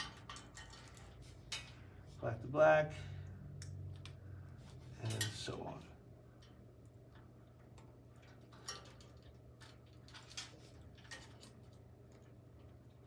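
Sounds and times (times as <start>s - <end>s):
faint clicks of wire connectors: 3.2s - 4.2s.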